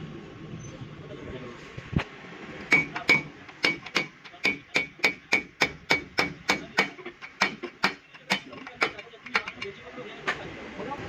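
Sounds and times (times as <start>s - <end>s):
hammer striking metal: 2.7s - 9.7s.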